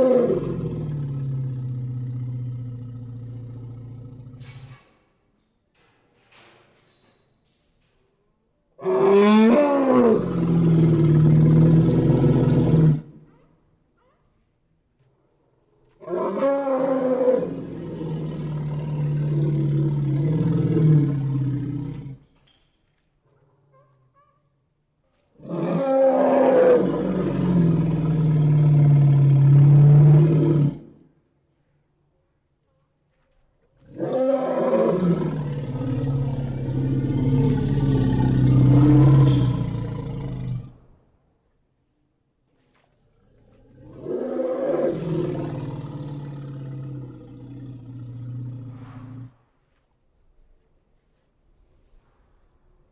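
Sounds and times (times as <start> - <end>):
creature's deep roar: 8.9 - 13.1, 25.4 - 30.9, 33.9 - 40.8, 43.7 - 49.3.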